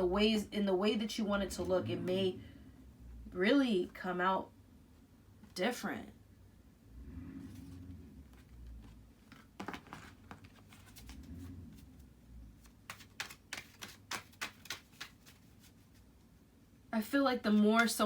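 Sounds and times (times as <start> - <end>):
soft handling noise: 7.4 - 16.4.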